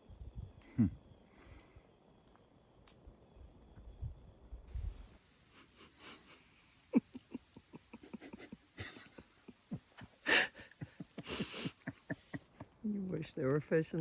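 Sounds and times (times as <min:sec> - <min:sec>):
breathy exhalations: 0:10.2 - 0:12.1.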